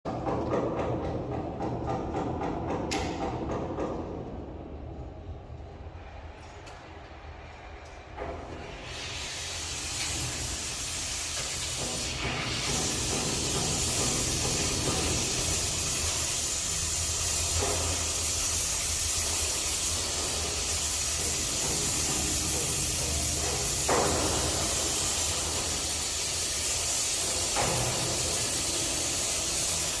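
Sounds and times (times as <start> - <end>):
welding torch flame hissing: 8.4 - 30.0.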